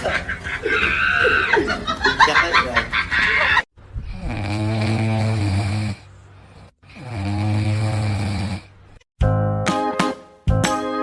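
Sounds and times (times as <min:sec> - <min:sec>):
person snoring: 0:04.0 - 0:08.7.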